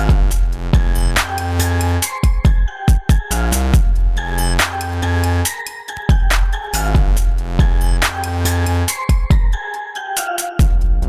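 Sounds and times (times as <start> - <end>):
deep synth bass: 0.0 - 2.0, 3.3 - 5.5, 6.2 - 8.9
pitched synth lines: 0.0 - 9.6
drum beat: 0.0 - 9.7, 10.3 - 11.0.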